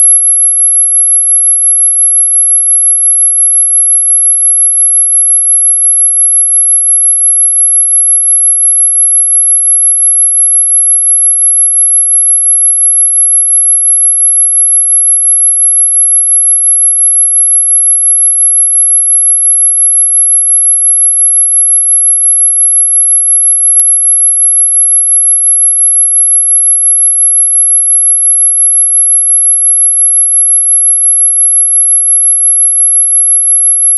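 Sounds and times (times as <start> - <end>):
high-pitched electronic tone: 0.0 - 0.2.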